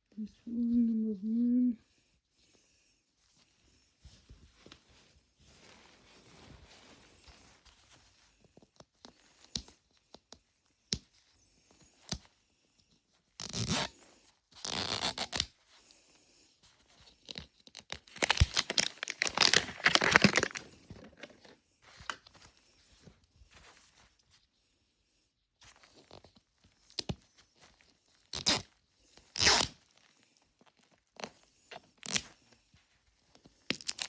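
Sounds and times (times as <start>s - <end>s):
plastic wrap tearing and crinkling: 14.6s - 15.5s, 17.3s - 22.2s, 28.3s - 28.7s, 29.3s - 29.8s, 32.0s - 32.3s, 33.7s - 34.0s.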